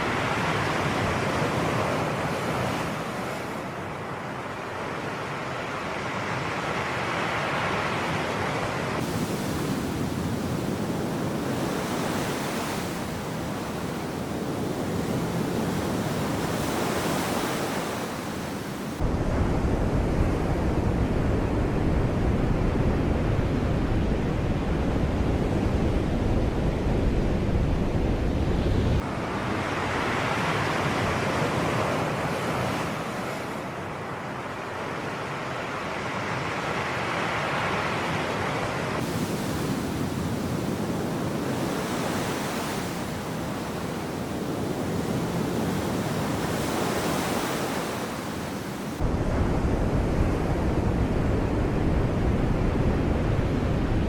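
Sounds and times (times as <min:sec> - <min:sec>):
sea waves washing on shore: 0:00.0 - 0:20.7, 0:29.0 - 0:54.0
wind rumble on microphone: 0:08.2 - 0:33.7, 0:38.3 - 0:54.0.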